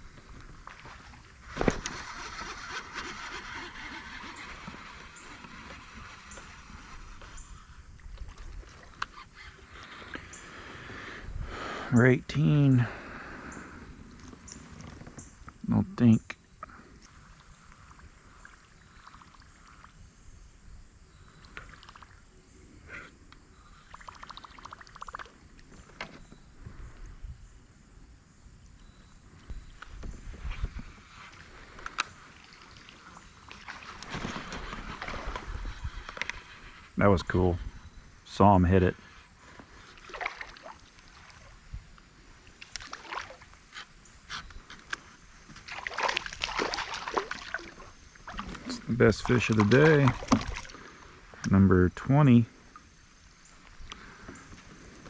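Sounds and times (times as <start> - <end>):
small water splashes: 21.4 - 22.3, 23.8 - 25.9, 31.2 - 36.4, 39.7 - 44.2, 45.4 - 51.6.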